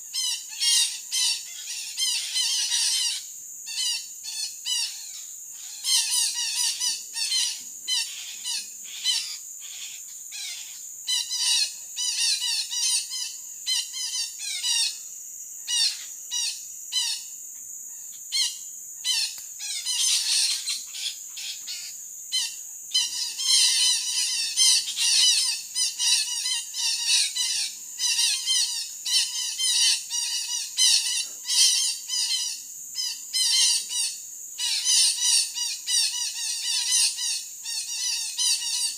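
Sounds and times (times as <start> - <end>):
high insect drone: 0.0 - 38.9
parakeets squawking: 19.1 - 21.9.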